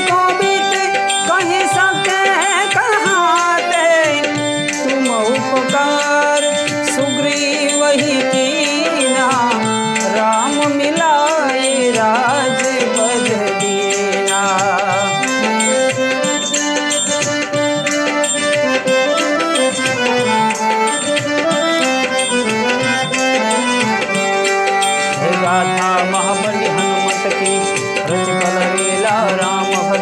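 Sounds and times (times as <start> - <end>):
harmonium chords: 0.0 - 30.0
tabla rhythm: 0.0 - 30.0
gliding ornamented melody: 15.2 - 30.0.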